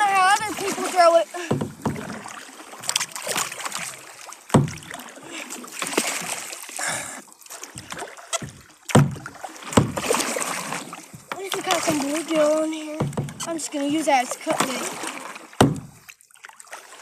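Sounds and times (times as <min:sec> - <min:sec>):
paddle splashing in water: 0:00.0 - 0:17.0
sharp knocks: 0:01.4 - 0:03.0, 0:04.5 - 0:04.9, 0:07.8 - 0:10.3, 0:13.0 - 0:13.5, 0:15.6 - 0:16.0.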